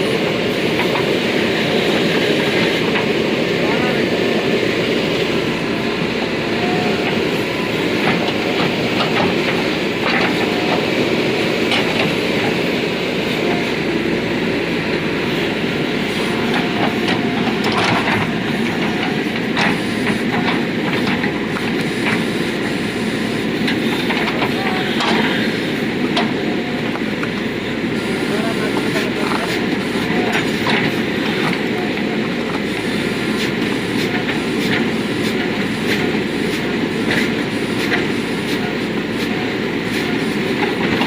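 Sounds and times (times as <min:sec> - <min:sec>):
diesel engine working under load: 0:00.0 - 0:41.0
digging knocks and clanks: 0:16.5 - 0:22.2.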